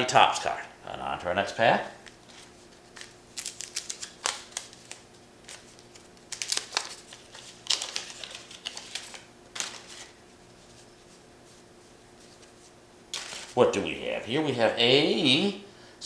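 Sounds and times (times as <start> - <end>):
wrapper tearing and crinkling: 2.9 - 10.2, 13.1 - 13.6.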